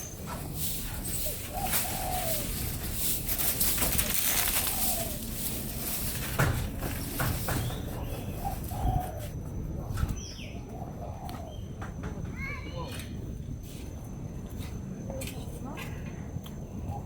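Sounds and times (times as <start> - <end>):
steady background hiss: 0.0 - 11.2
pigeons cooing: 0.0 - 12.0, 16.7 - 17.0.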